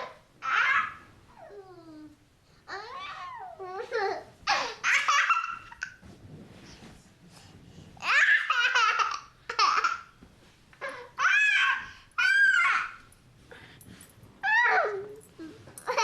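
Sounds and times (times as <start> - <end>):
baby laughing loudly: 4.5 - 6.0, 8.0 - 10.1.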